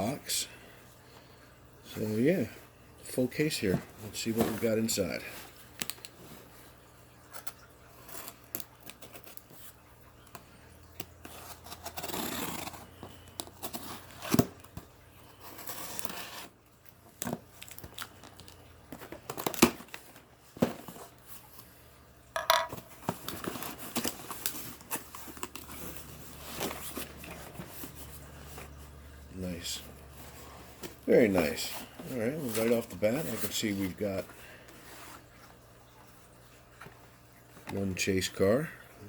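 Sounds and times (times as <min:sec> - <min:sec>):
cardboard tearing and rustling: 0:11.3 - 0:12.9, 0:15.4 - 0:16.6, 0:19.0 - 0:21.1, 0:23.0 - 0:28.0.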